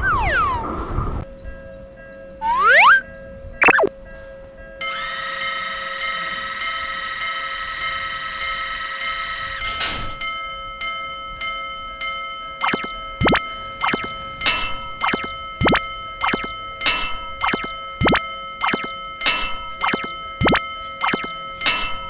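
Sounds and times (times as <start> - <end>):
railroad crossing alarm ringing: 4.8 - 9.7.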